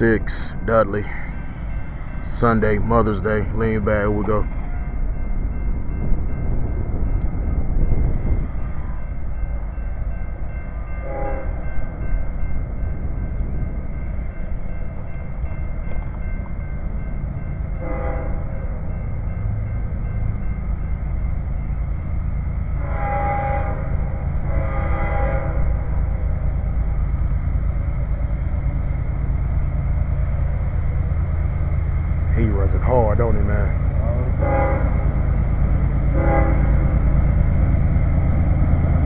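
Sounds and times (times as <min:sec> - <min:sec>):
locomotive low rumble: 0:00.0 - 0:39.0
train air horn blasts: 0:11.0 - 0:11.6, 0:17.8 - 0:18.6, 0:22.8 - 0:25.9, 0:34.2 - 0:35.2, 0:36.0 - 0:37.0.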